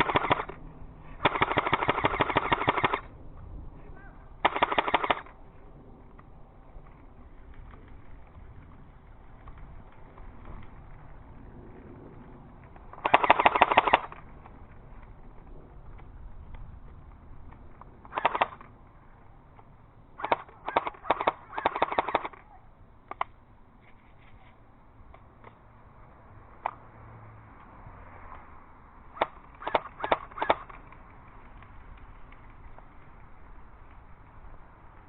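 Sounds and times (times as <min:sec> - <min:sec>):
airsoft gun bursts: 0:00.0 - 0:03.1, 0:04.4 - 0:05.4, 0:12.9 - 0:14.2, 0:18.0 - 0:18.7, 0:20.2 - 0:23.2, 0:29.2 - 0:30.8
airsoft single shots: 0:00.0 - 0:03.1, 0:04.4 - 0:05.4, 0:12.9 - 0:14.2, 0:18.0 - 0:18.7, 0:20.2 - 0:22.4, 0:29.2 - 0:30.8.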